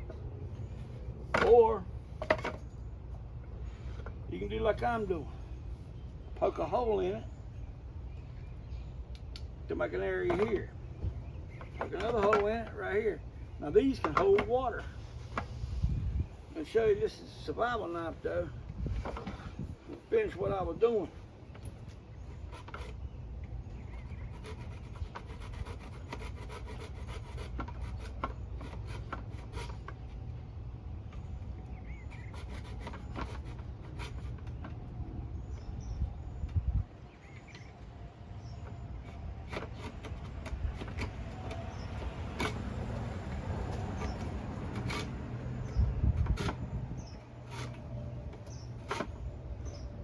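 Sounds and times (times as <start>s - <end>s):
knife scraping bamboo: 22.4s - 23.0s, 23.8s - 30.2s, 32.1s - 34.6s, 39.4s - 49.8s.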